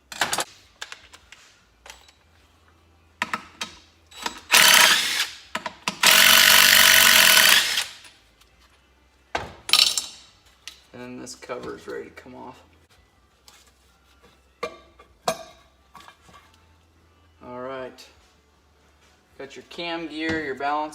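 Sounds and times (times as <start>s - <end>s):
power tool spinning out bolts: 4.1s - 5.4s, 6.0s - 8.0s.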